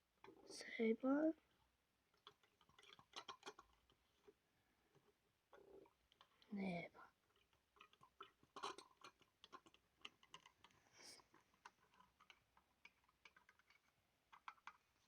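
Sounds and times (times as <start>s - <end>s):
small clicks and taps: 2.1s - 6.5s, 7.3s - 15.0s.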